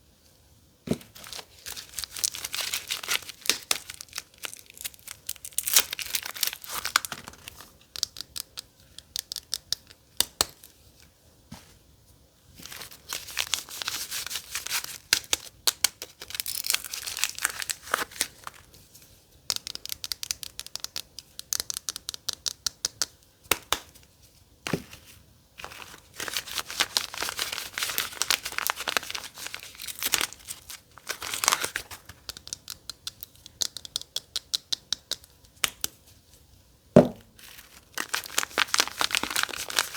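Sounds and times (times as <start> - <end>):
packaging tearing and crinkling: 1.0 - 7.7, 12.6 - 18.7, 25.6 - 32.4, 37.4 - 39.9.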